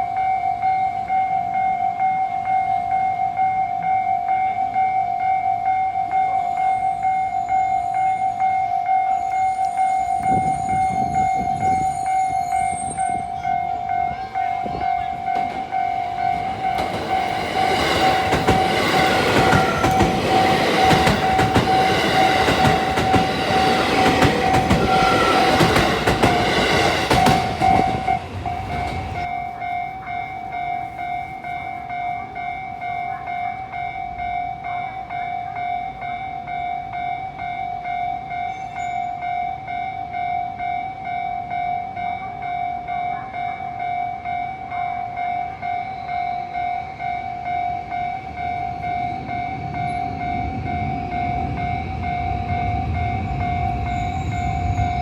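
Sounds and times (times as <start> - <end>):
level-crossing warning bell: 0.0 - 55.0
train wheels clattering over rails: 14.4 - 29.3.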